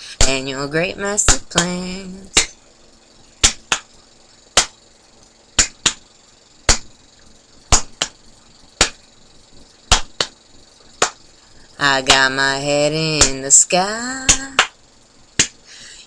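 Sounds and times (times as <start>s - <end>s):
finger snaps: 2.4s - 2.6s, 3.4s - 3.9s, 4.6s - 4.8s, 5.6s - 6.0s, 6.7s - 6.9s, 7.7s - 8.2s, 8.8s - 9.0s, 9.9s - 10.4s, 13.2s - 13.4s, 14.3s - 14.8s, 15.4s - 15.6s.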